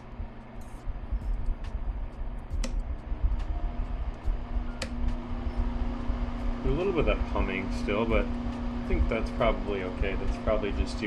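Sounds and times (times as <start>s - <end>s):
rumble of moving air: 0.0s - 10.9s
electric fan humming: 0.0s - 11.0s
sharp click: 2.5s - 2.9s.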